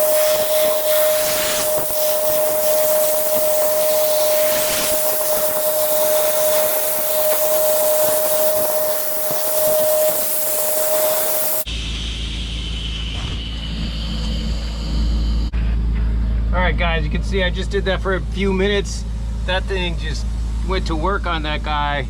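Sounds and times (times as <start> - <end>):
sandblaster hissing with whistling tone: 0.0 - 15.5.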